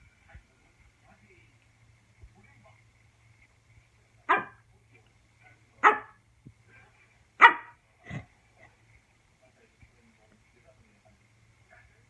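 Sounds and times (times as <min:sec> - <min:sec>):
dog barking: 0:04.3 - 0:04.6, 0:05.8 - 0:06.2, 0:07.4 - 0:07.8.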